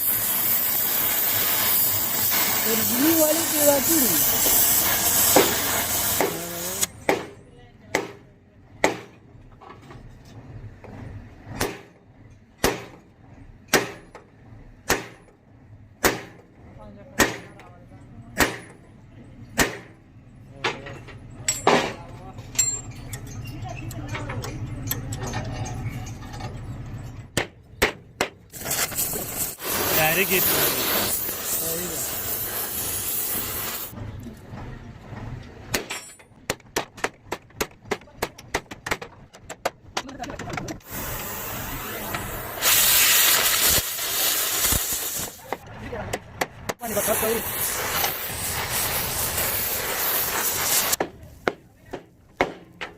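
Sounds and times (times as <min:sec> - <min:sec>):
steady hiss: 0:00.0 - 0:06.9, 0:28.6 - 0:34.0, 0:40.8 - 0:45.5, 0:46.8 - 0:51.0.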